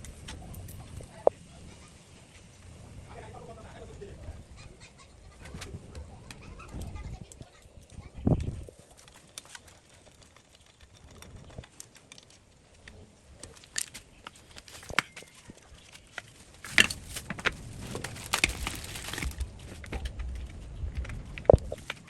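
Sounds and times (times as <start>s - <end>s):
hard parts clicking and clinking: 13.4s - 20.0s.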